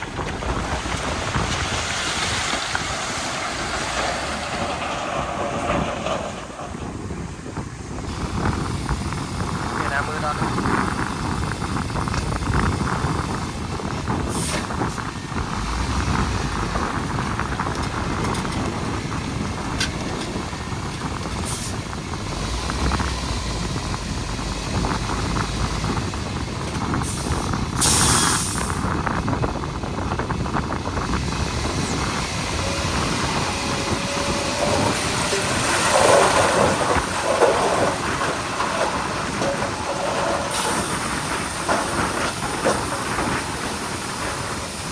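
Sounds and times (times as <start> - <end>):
diesel engine running: 0.0 - 44.9
machinery clanking: 0.0 - 44.9
air hiss: 27.2 - 28.8.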